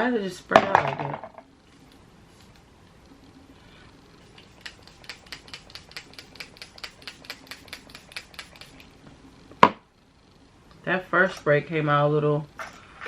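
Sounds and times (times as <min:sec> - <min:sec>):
spray bottle rapid clicking: 0:04.3 - 0:09.0.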